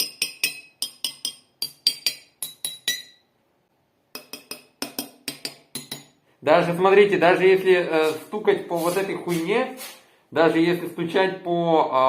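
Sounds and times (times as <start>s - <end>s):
pen tapping water glasses: 0.0s - 3.2s, 4.1s - 6.2s.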